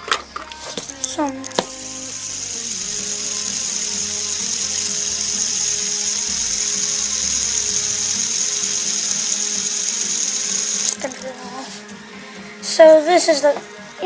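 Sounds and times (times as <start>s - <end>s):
fidget spinner whirring: 0.6s - 11.9s.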